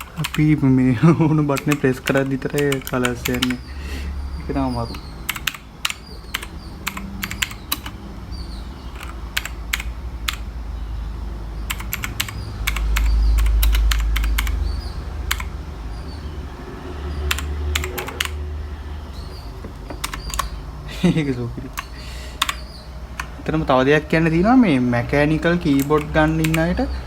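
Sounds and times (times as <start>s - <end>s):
mechanical keyboard clicks: 0.0s - 0.5s, 1.5s - 3.7s, 4.9s - 8.0s, 8.9s - 10.5s, 11.7s - 14.7s, 15.3s - 15.5s, 17.3s - 18.4s, 19.7s - 20.6s, 21.7s - 23.4s, 25.7s - 26.8s.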